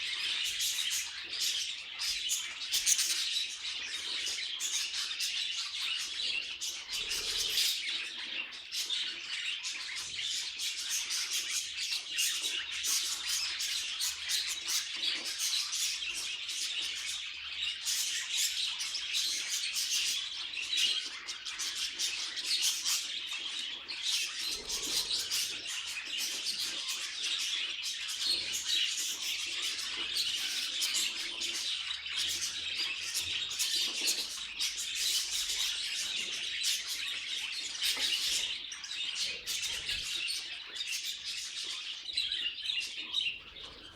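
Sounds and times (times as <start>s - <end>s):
budgerigars chattering: 0.0s - 43.9s.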